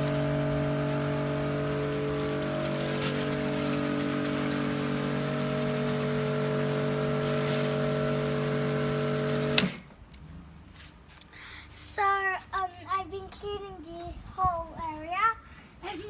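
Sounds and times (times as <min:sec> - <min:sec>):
pressure washer motor humming: 0:00.0 - 0:09.9
water jet hissing: 0:00.0 - 0:09.9.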